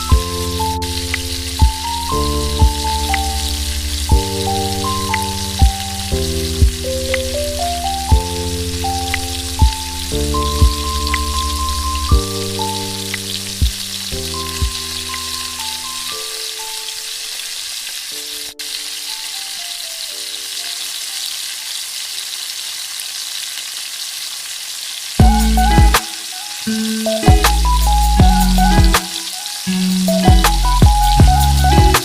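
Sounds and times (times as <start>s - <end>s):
background music of held notes: 0.0s - 17.3s, 25.2s - 32.0s
food sizzling in hot oil: 0.0s - 32.0s.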